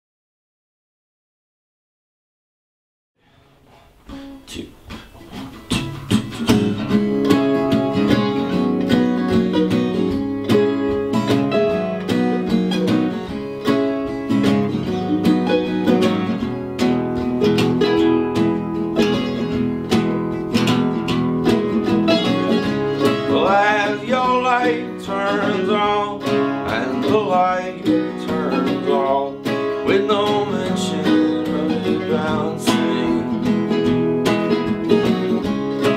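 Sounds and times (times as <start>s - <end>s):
acoustic guitar picking: 3.2s - 35.9s
person singing: 23.0s - 34.2s.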